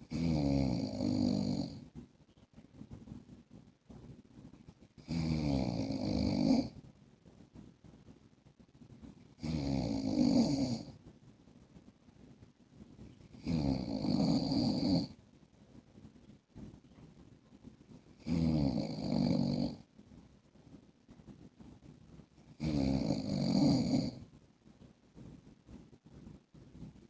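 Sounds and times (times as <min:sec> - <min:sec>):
man snoring: 0:00.1 - 0:01.8, 0:05.0 - 0:06.8, 0:09.4 - 0:11.0, 0:13.4 - 0:15.2, 0:18.2 - 0:19.8, 0:22.6 - 0:24.2.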